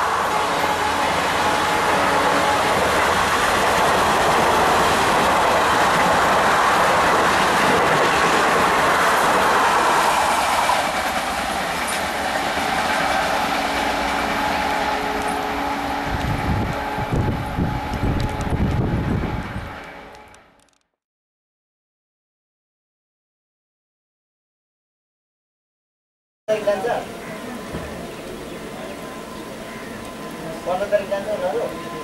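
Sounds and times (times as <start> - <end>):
train wheels clattering on rails: 2.2 - 16.4.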